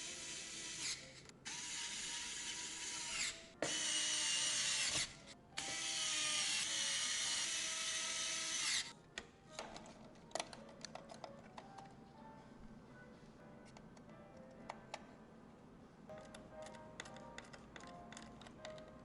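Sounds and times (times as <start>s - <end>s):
small mechanism ratcheting and whirring: 0.2s - 8.9s.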